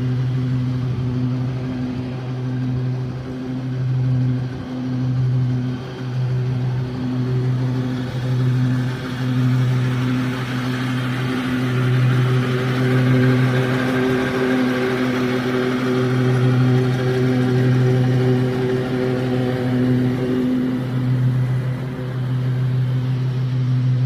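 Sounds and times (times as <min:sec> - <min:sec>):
lawn mower engine running: 0:00.0 - 0:24.0.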